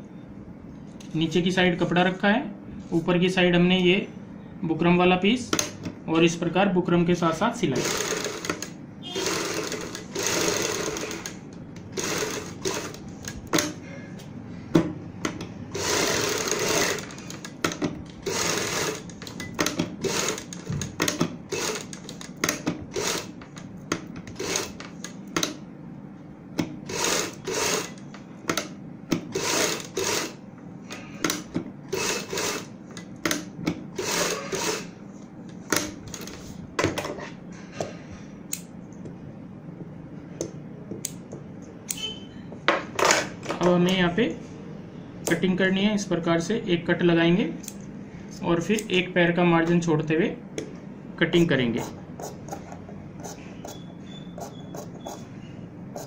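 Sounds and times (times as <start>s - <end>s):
sewing machine stitching: 7.8s - 13.7s, 15.7s - 17.5s, 18.2s - 23.4s, 24.3s - 24.8s, 26.9s - 28.0s, 29.3s - 30.4s, 31.9s - 32.7s, 34.0s - 34.9s.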